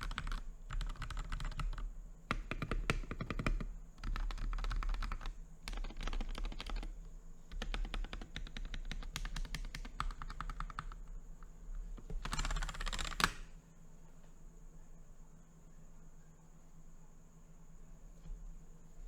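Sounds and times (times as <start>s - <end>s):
mechanical keyboard key clacks: 0.0s - 6.9s, 7.5s - 11.0s, 12.0s - 13.5s.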